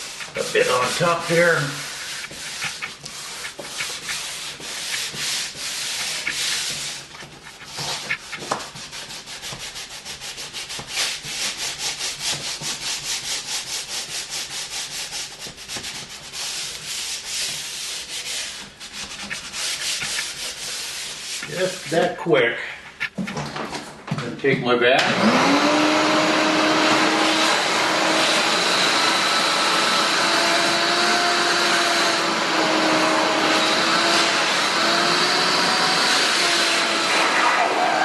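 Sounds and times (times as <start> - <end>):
sandpaper rubbing on wood: 0.0 - 22.1.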